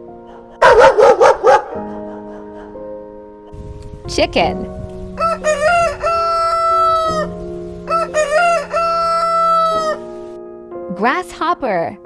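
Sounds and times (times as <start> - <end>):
rooster crowing: 5.0 - 10.3.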